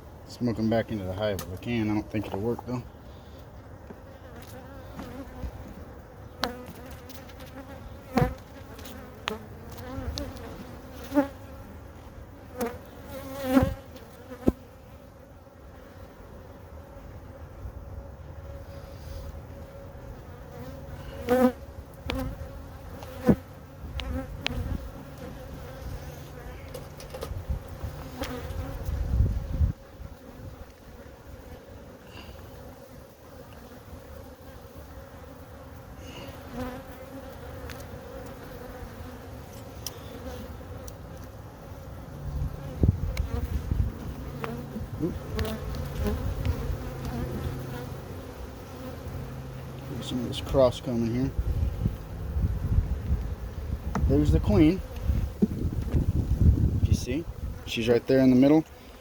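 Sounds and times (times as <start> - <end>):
bees buzzing: 0.8 - 59.0.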